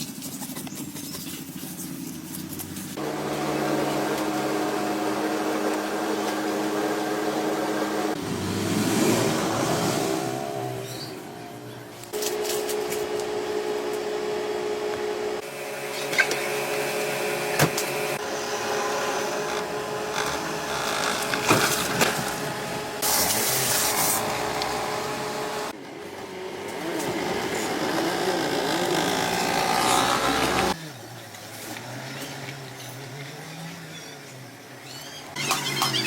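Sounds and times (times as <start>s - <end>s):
power tools running: 3.0s - 8.2s, 12.1s - 30.8s.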